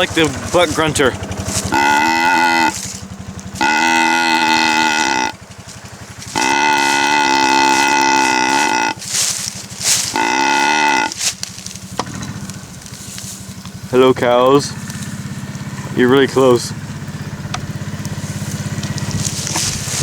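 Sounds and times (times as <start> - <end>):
horn blasts: 0.0 - 12.2
vehicle engine running: 0.0 - 20.0.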